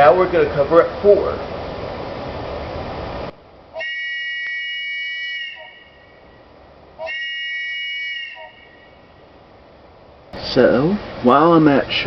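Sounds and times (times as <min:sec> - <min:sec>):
wooden train whistle blasts: 0:03.8 - 0:06.1, 0:07.0 - 0:09.0.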